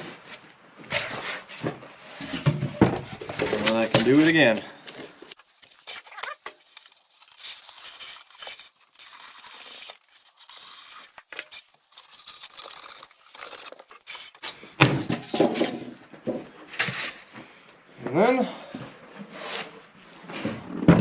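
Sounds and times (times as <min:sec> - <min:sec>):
foam board scraping: 0:05.3 - 0:14.4.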